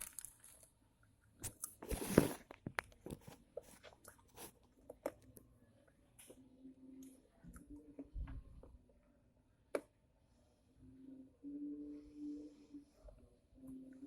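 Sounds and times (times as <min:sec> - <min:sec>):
person crunching crispy chips: 0:00.0 - 0:00.7
chewing with small crunches: 0:00.0 - 0:05.4.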